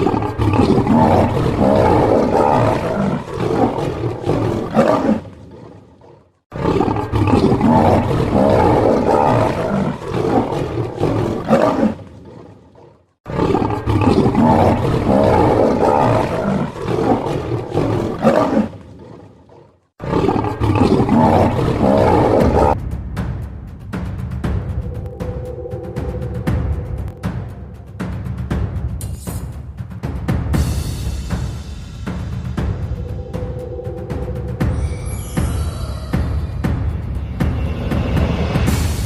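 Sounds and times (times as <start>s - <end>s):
lions roaring and growling: 0.0s - 22.8s, 32.7s - 35.9s.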